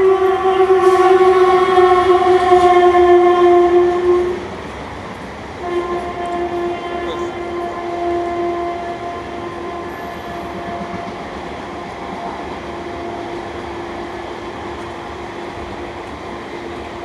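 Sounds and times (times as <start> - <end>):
locomotive horn blast: 0.0 - 4.5, 5.6 - 17.0
passing train rumble: 0.0 - 17.0.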